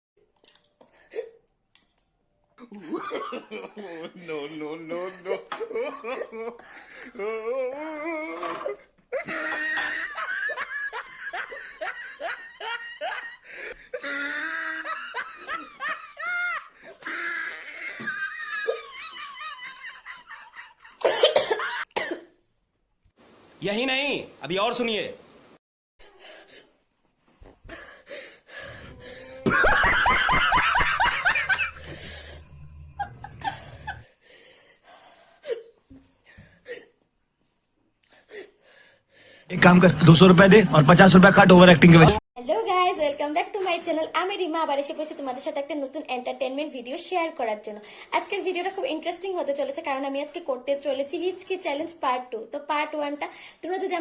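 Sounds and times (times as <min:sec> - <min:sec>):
person giggling and breathing: 0:28.6 - 0:34.5
person laughing hard: 0:28.7 - 0:34.0.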